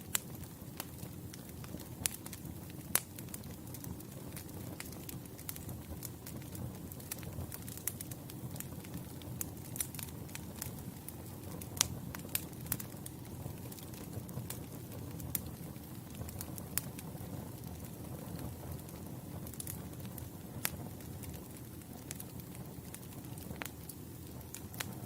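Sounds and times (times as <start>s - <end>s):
burning wood crackling and popping: 0.0s - 25.0s
campfire flames rumbling: 0.0s - 25.0s.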